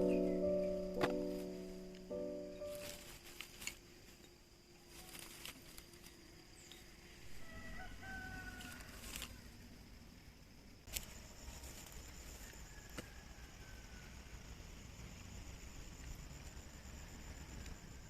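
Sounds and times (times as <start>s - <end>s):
rooster crowing faintly: 7.2s - 9.6s, 12.3s - 14.6s.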